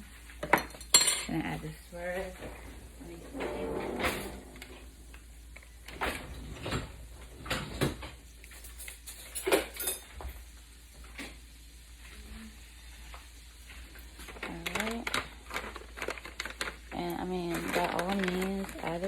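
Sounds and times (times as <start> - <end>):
utensils and dishware clinking: 0.4 - 1.7, 7.5 - 10.3.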